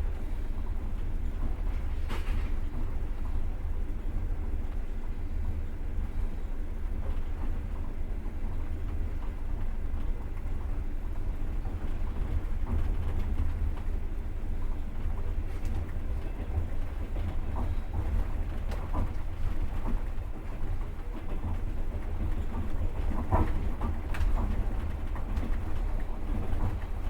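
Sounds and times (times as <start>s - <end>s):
train wheels rumbling on track: 0.0s - 27.0s.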